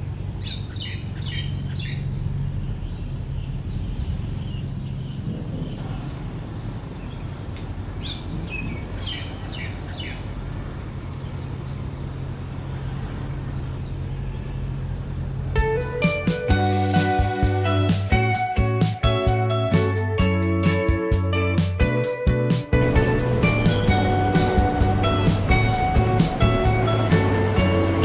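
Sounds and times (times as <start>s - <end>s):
birds chirping: 0.0s - 16.8s, 22.8s - 28.0s
steady low rumble: 0.0s - 16.8s, 22.8s - 28.0s.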